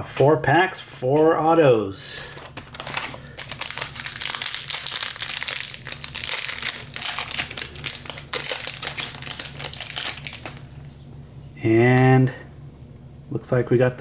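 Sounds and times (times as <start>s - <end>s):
foil wrapper crinkling: 2.2s - 11.1s.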